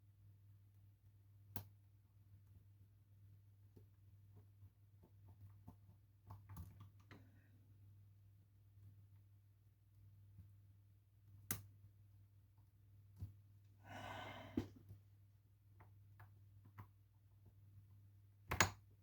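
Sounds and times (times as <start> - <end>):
person sighing: 13.8 - 14.8.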